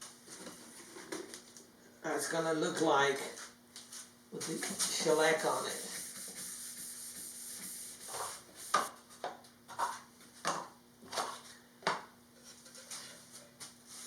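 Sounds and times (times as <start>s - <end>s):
rag rubbing on wood: 4.4s - 8.9s.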